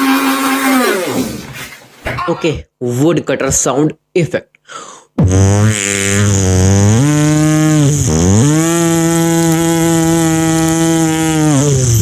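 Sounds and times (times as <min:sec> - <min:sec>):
beatboxer imitating a saw: 0:00.0 - 0:01.4, 0:05.2 - 0:12.0.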